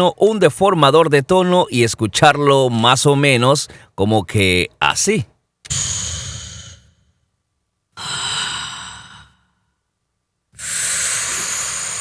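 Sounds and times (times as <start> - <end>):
pitch-shifted breathy sighs: 5.7 - 7.2, 8.0 - 9.8, 10.6 - 12.0.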